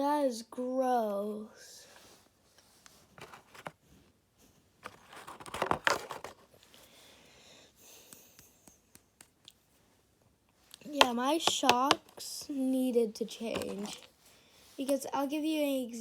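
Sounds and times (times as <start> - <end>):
scraping and crinkling: 1.9 - 4.0, 4.8 - 6.8, 13.3 - 14.2
small parts clicking and tapping: 10.8 - 12.2.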